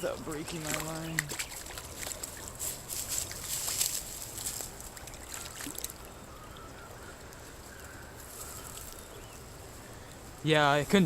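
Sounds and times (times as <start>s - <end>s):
water splashing: 0.0s - 6.8s.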